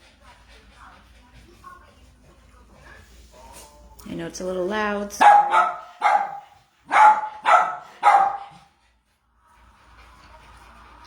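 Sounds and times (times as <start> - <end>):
dog barking: 5.2 - 8.7.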